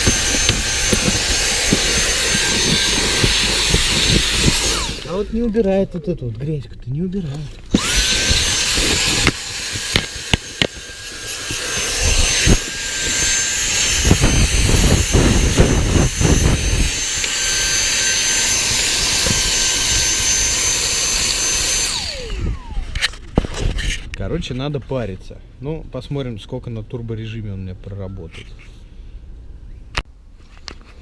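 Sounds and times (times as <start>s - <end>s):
vacuum nozzle knocking: 0.0s - 5.2s, 7.7s - 21.9s
vacuum cleaner whine: 0.0s - 5.3s, 7.7s - 23.1s
nozzle scraping over floor: 0.0s - 5.6s.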